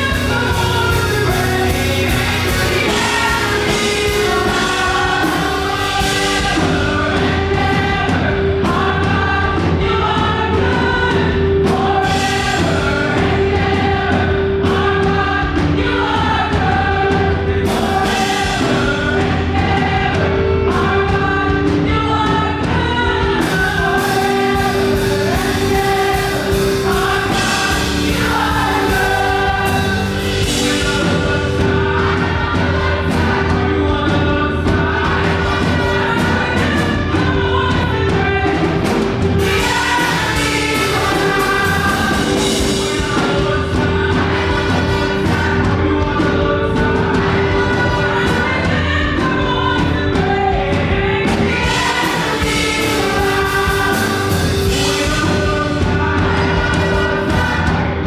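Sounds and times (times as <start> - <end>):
band playing: 0.0 - 58.0
group of voices singing: 0.0 - 58.0
steady drum beat: 0.0 - 58.0
sustained bass: 0.0 - 58.0.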